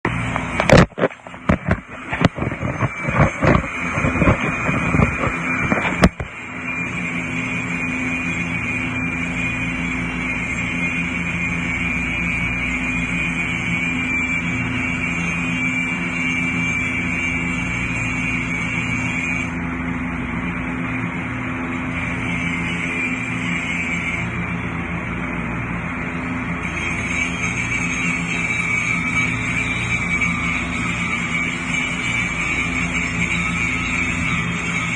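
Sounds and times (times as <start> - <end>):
engine running steadily: 0.0 - 34.9
knocks and clatters: 0.3 - 6.3.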